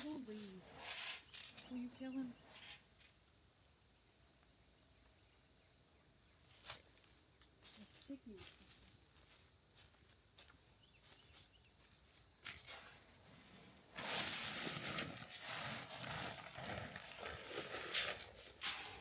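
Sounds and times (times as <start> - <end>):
insects buzzing: 0.0 - 19.0
rustling and crunching: 6.5 - 19.0.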